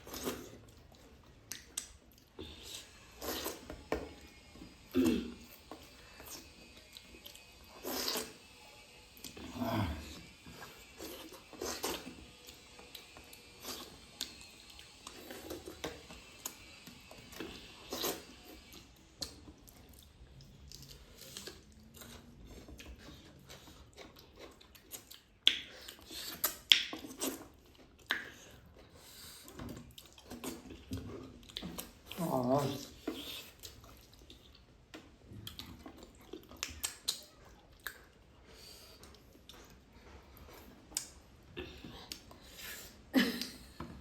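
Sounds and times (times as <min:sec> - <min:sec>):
soft chewing: 0:00.0 - 0:44.0
rice and curry being mixed: 0:05.5 - 0:25.4.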